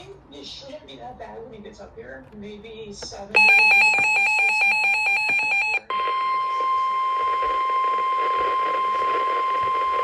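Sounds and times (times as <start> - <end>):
rapid electronic beeping: 3.4 - 10.0
radio hiss: 6.1 - 10.0.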